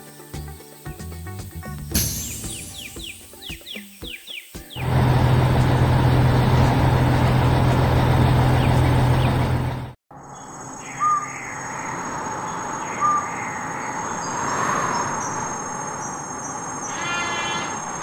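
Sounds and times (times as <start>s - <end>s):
outdoor ambience: 1.6s - 18.0s
bird chirps: 2.0s - 5.1s, 7.9s - 11.8s
heavy truck engine running: 4.8s - 10.0s.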